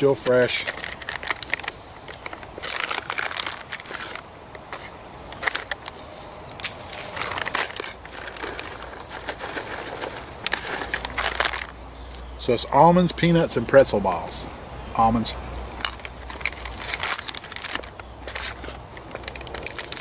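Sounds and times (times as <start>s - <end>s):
plastic pouch crinkling: 0.2s - 11.8s, 15.8s - 20.0s
crunchy snack being chewed: 15.9s - 20.0s.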